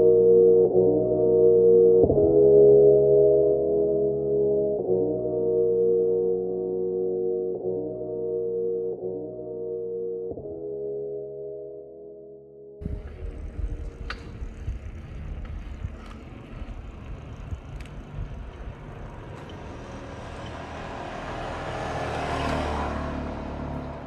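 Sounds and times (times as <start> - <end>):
background music: 0.0 - 16.2
street rumble: 12.8 - 24.0
vehicle passing: 12.8 - 24.0.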